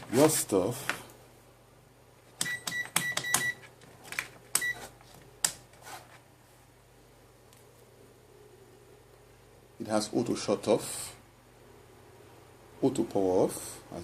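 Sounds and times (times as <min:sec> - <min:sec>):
multimeter beeping: 0:02.4 - 0:03.7, 0:04.6 - 0:04.9.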